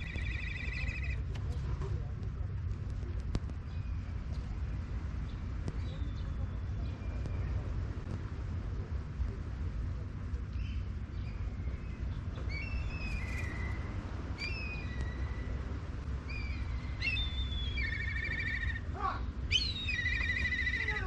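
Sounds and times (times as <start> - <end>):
songbird whistling and warbling: 16.3 - 18.8, 19.5 - 21.0.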